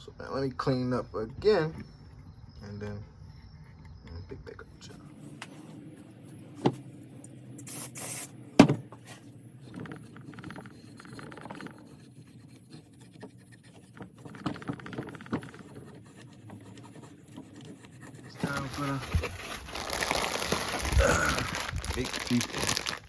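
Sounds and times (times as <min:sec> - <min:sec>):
short hiss: 0:07.6 - 0:08.3
sharp knocks: 0:08.6 - 0:09.0.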